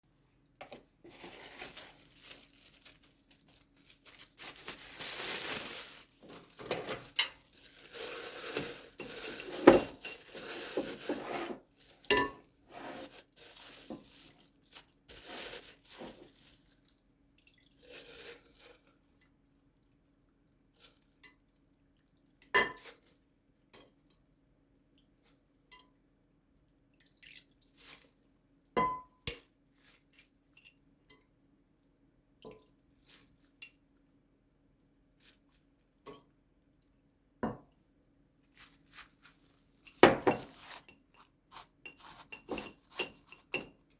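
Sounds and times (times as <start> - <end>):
dishes and utensils clattering: 6.2 - 13.1, 39.9 - 40.6.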